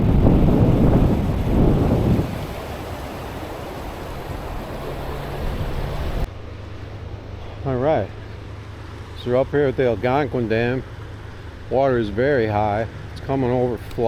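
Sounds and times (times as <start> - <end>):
wind buffeting microphone: 0.0 - 6.3.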